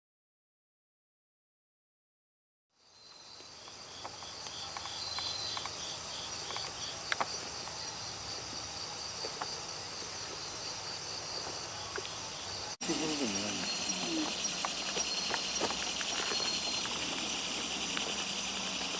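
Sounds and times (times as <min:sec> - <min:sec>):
insect chirping in pulses: 0:02.7 - 0:18.9
insects trilling: 0:02.7 - 0:18.9.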